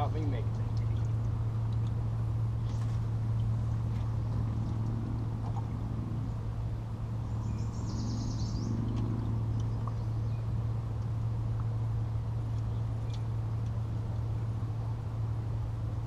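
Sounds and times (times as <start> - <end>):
steady low hum: 0.0 - 16.0
bird warbling: 7.2 - 10.5.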